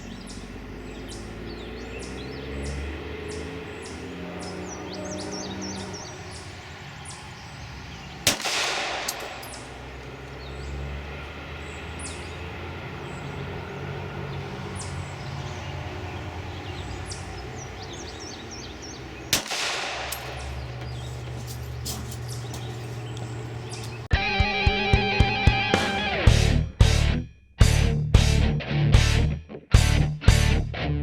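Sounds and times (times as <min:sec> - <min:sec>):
birds chirping: 0:00.0 - 0:26.2
pistol shots with echo: 0:08.2 - 0:10.1, 0:19.2 - 0:21.1.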